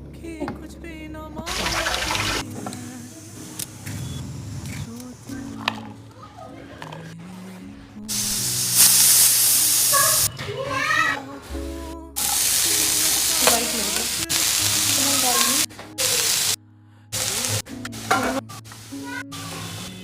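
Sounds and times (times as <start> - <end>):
background music: 0.0 - 20.0
food sizzling in a pan: 8.1 - 10.3, 12.2 - 16.6, 17.2 - 20.0.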